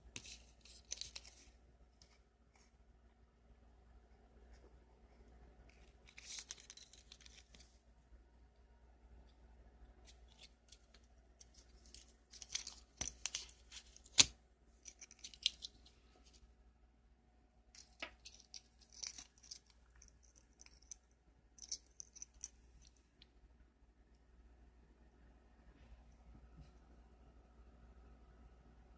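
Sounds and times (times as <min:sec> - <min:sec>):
plastic packaging crinkling: 0:05.9 - 0:07.8.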